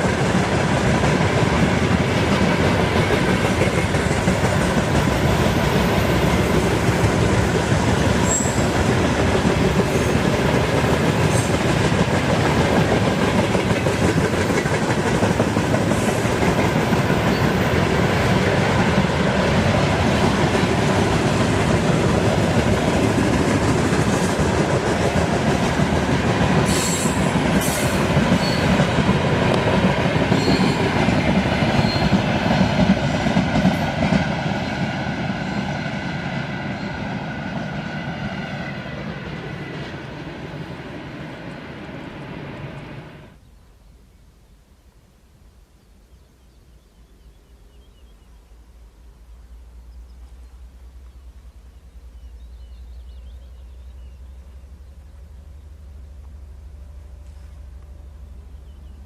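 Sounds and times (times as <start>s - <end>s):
train wheels rolling on rails: 0.0s - 43.4s.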